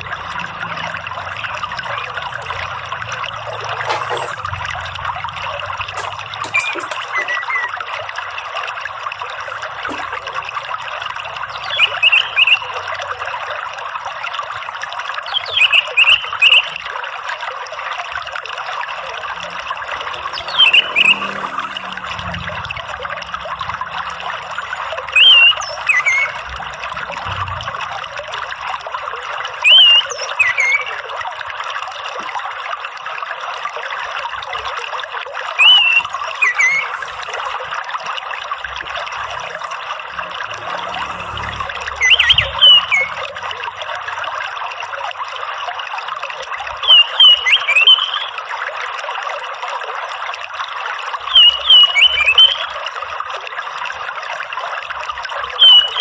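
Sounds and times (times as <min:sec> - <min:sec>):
running trickling water: 0:00.0 - 0:56.0
bird whistled calls: 0:06.4 - 0:07.8, 0:11.5 - 0:12.8, 0:15.3 - 0:16.8, 0:20.3 - 0:21.4, 0:25.1 - 0:26.5, 0:29.6 - 0:31.0, 0:35.6 - 0:37.6, 0:42.0 - 0:43.2, 0:46.8 - 0:48.4, 0:51.3 - 0:52.7, 0:55.6 - 0:56.0.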